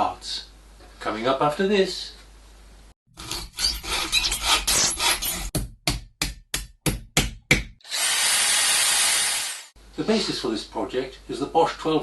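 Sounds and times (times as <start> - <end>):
hand tool rasping on metal: 3.2 - 5.5.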